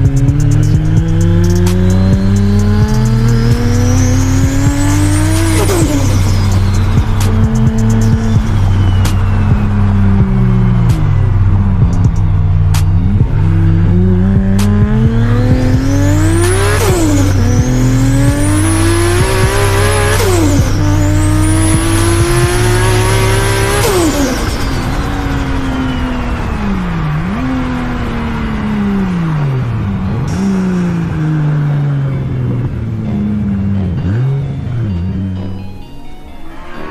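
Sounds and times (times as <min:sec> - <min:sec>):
high turbo whistle: 0:00.0 - 0:27.4, 0:36.3 - 0:36.9
car engine accelerating hard: 0:00.0 - 0:35.9.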